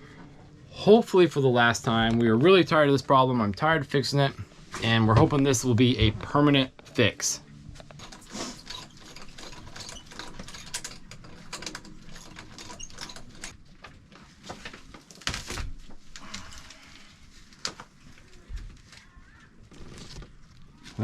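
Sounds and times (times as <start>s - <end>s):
metal parts clinking and scraping: 7.8s - 13.7s.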